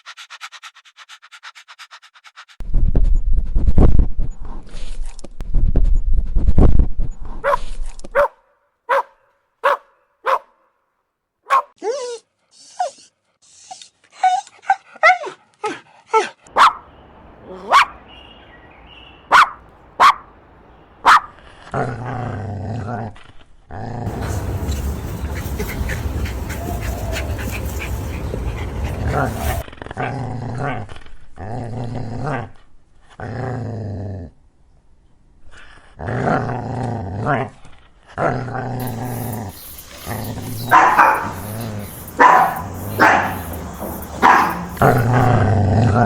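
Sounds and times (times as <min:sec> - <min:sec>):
dog barking: 0:07.4 - 0:10.7, 0:11.5 - 0:11.8, 0:16.5 - 0:16.9, 0:17.5 - 0:18.1, 0:19.2 - 0:20.3, 0:21.0 - 0:21.4, 0:40.0 - 0:45.3
low rumbling noise: 0:24.1 - 0:29.6.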